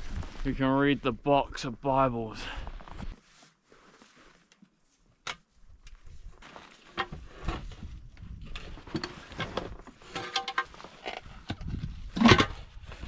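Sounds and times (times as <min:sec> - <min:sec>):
wind rumble on microphone: 0:07.4 - 0:09.0, 0:11.3 - 0:13.0.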